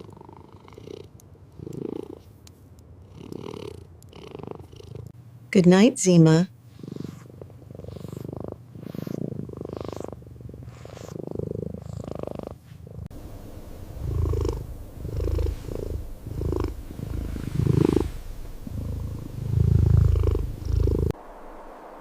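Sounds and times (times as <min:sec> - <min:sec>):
kitten purring: 0:00.0 - 0:05.2, 0:06.2 - 0:21.2.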